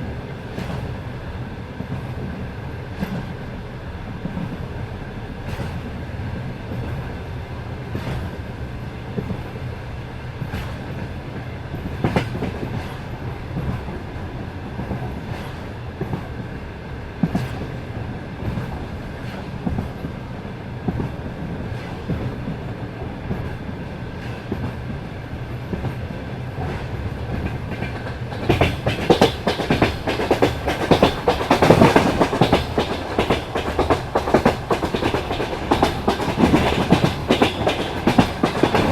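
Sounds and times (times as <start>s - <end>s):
train rumble: 0.0s - 38.9s
train wheels clattering: 5.4s - 5.9s, 20.9s - 38.9s.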